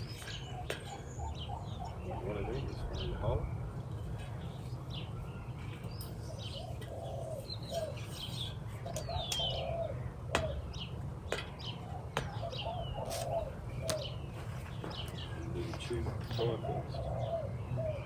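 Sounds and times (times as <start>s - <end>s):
bird chirps: 0.0s - 18.0s
dove cooing: 0.1s - 3.4s, 6.3s - 14.2s, 14.9s - 18.0s.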